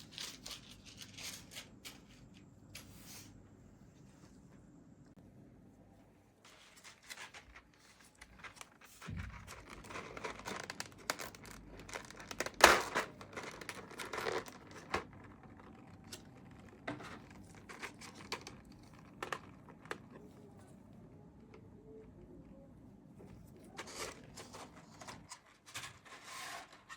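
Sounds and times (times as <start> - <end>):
plastic packaging crinkling: 6.5 - 20.2.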